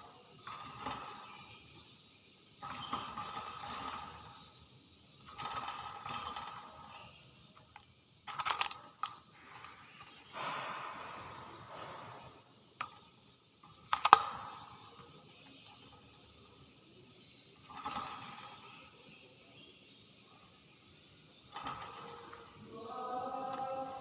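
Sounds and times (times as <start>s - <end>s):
bird raspy hissing calls: 0.0s - 8.1s, 9.2s - 24.0s
bird clicks: 12.8s - 16.0s.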